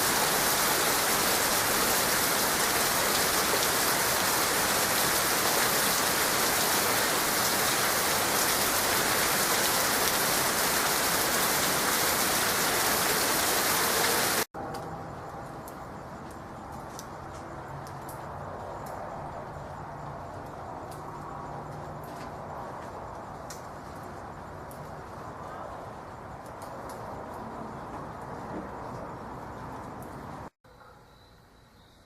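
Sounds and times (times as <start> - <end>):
heavy rain falling: 0.0 - 14.5.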